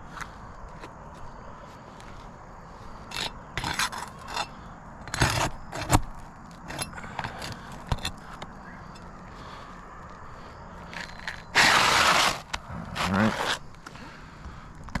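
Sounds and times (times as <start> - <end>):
shingles scraping: 3.1 - 8.4, 10.9 - 13.8.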